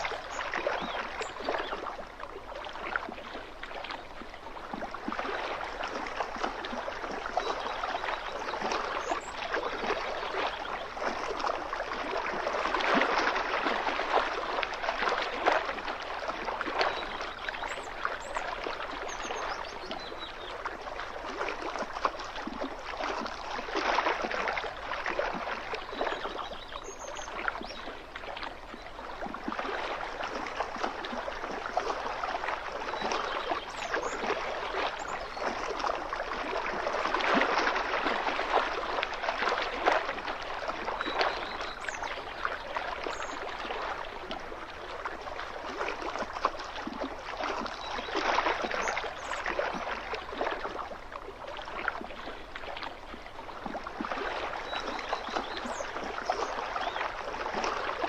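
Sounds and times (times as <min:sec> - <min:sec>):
waves lapping on shore: 0:00.0 - 0:58.0.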